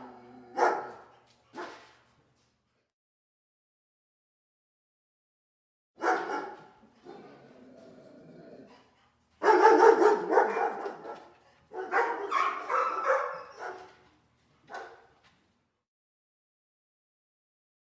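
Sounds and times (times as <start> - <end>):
dog barking: 0.5 - 1.9, 6.0 - 7.3, 9.4 - 14.0, 14.7 - 15.2.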